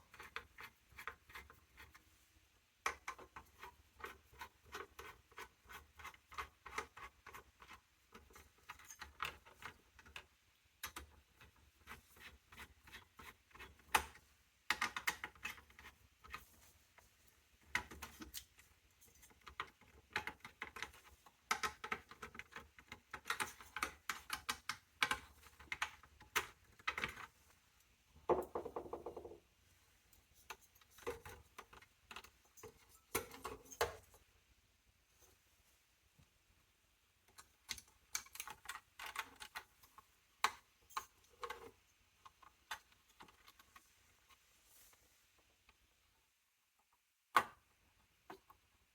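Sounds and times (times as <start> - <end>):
clicks and rattles of handled parts: 17.6 - 27.3, 37.3 - 44.3.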